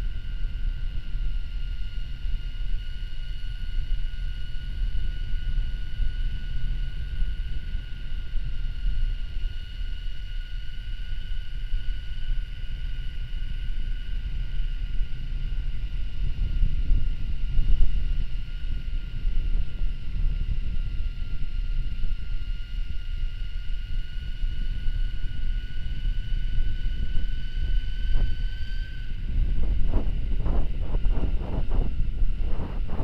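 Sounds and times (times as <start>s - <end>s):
electric motor whine: 0.0s - 33.0s
wind buffeting microphone: 14.3s - 23.0s, 24.1s - 33.0s.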